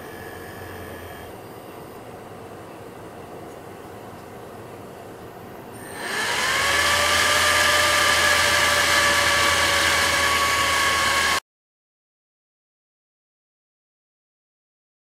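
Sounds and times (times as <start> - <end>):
cooler fan whirring: 0.0 - 11.4.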